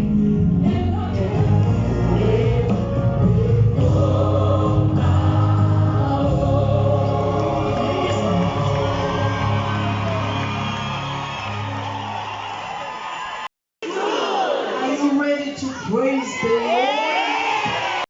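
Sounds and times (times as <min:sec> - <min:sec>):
gospel choir singing: 0:00.0 - 0:12.4.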